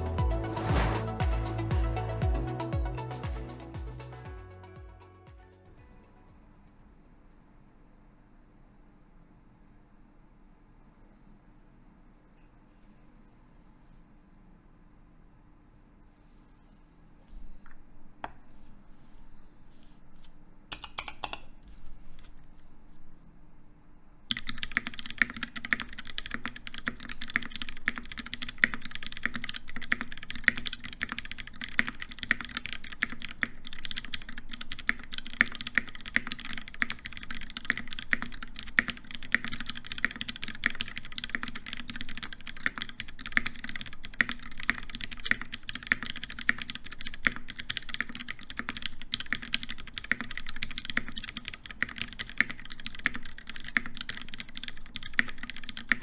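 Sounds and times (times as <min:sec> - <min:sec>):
fast typing on mechanical keyboard: 0:20.7 - 0:21.6, 0:24.3 - 0:56.0.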